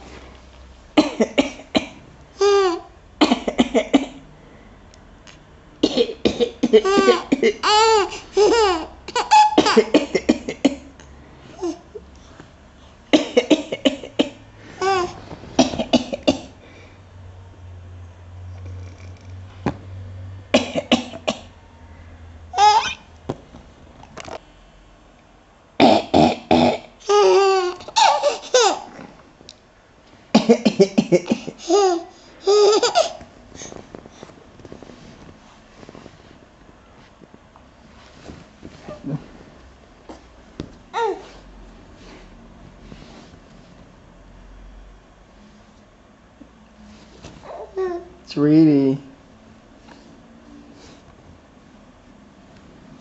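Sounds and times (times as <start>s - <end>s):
adult coughing: 1.0s - 2.0s, 3.2s - 4.2s, 5.8s - 7.6s, 9.6s - 10.9s, 13.1s - 14.4s, 15.6s - 16.6s, 20.6s - 21.5s, 30.3s - 31.6s
baby laughing: 2.4s - 2.9s, 6.5s - 10.6s, 14.8s - 16.2s, 22.6s - 23.1s, 27.0s - 29.0s, 30.7s - 33.3s.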